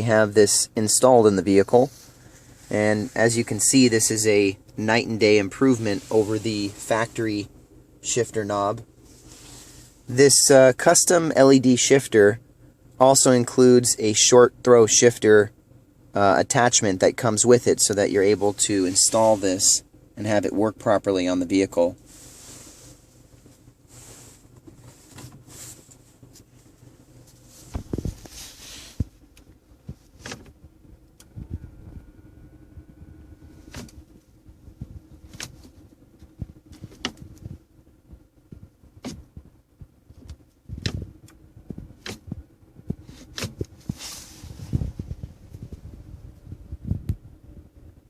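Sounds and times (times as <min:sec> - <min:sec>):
faint car cabin hum: 0:00.0 - 0:48.0
rustling: 0:22.0 - 0:30.6, 0:43.0 - 0:46.0
sharp clicks and knocks: 0:35.3 - 0:44.0.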